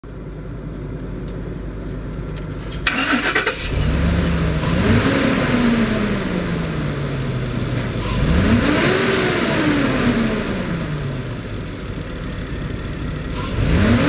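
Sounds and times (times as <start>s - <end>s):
engine starter cranking: 2.7s - 5.8s
engine revving and idling: 2.8s - 14.0s.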